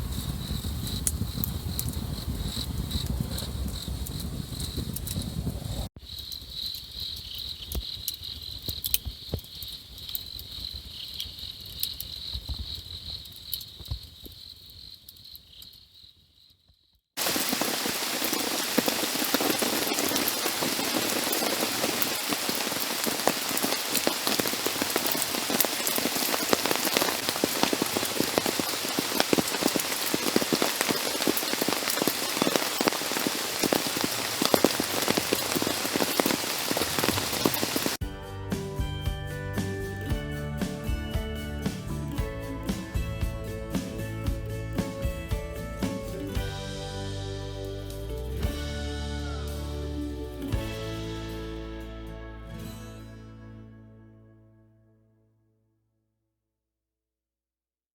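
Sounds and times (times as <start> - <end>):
insects trilling: 6.0 - 38.0
heavy rain pattering: 17.2 - 38.0.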